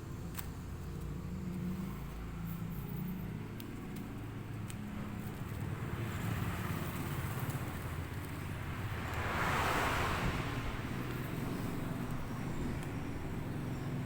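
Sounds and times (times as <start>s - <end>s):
engine hum: 0.0s - 14.0s
vehicle passing: 6.0s - 14.0s.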